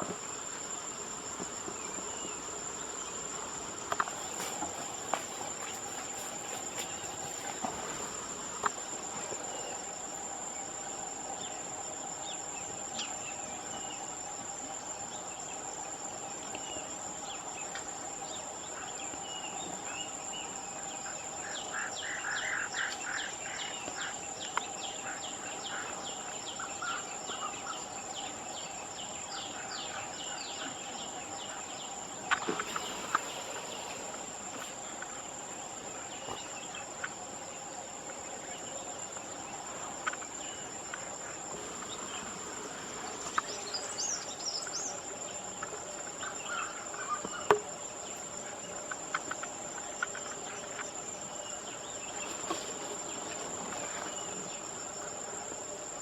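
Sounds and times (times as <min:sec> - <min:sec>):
insects shrilling: 0:32.3 - 0:36.1.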